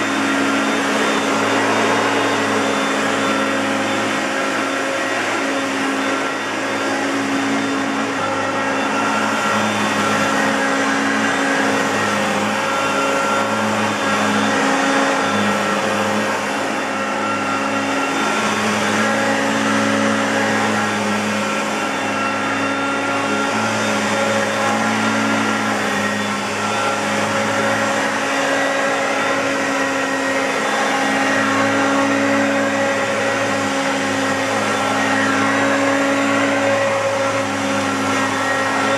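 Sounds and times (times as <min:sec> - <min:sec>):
upright vacuum cleaner running: 0:00.0 - 0:38.9.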